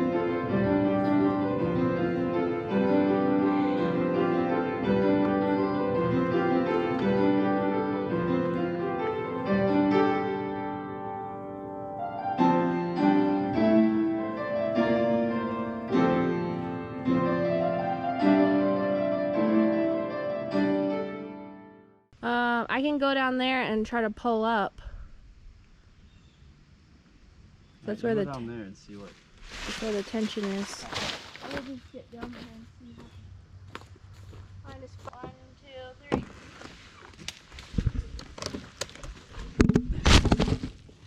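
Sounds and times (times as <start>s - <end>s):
piano melody over chords: 0.0s - 22.1s.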